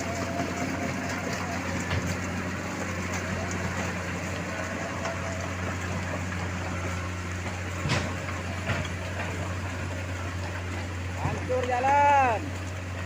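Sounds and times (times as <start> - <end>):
heavy diesel engine running: 0.0 - 13.0
short clunk: 7.8 - 9.0.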